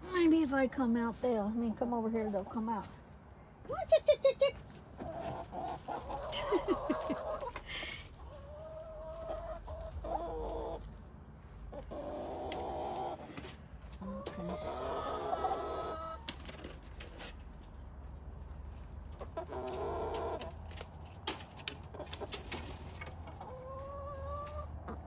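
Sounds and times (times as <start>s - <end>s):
chickens clucking: 3.6s - 17.7s, 18.4s - 25.0s
chickens calling: 3.8s - 17.2s, 18.8s - 25.0s.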